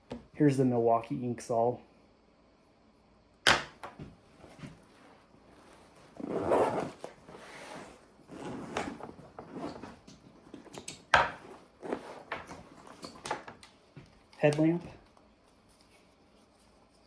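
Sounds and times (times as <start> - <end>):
rustling scrape of gear: 4.4 - 10.0, 11.4 - 13.1.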